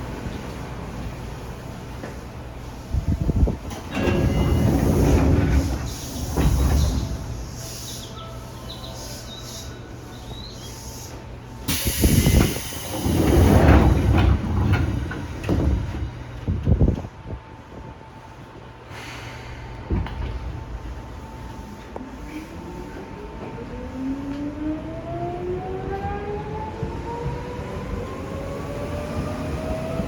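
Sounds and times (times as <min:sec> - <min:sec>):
air hiss from train doors: 0:00.9 - 0:16.1, 0:18.2 - 0:23.2
doors rumbling and knocking: 0:03.6 - 0:07.6, 0:12.3 - 0:17.1.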